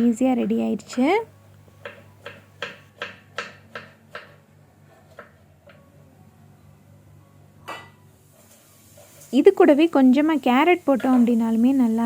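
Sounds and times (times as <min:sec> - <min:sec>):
knife chopping vegetables on board: 0:01.8 - 0:04.5, 0:05.1 - 0:05.4.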